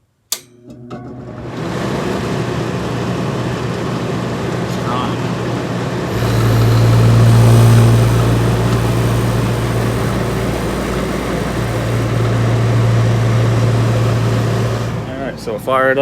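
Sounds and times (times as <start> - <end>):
compressor electrical hum: 6.1 - 16.0
fan rushing: 6.1 - 16.0.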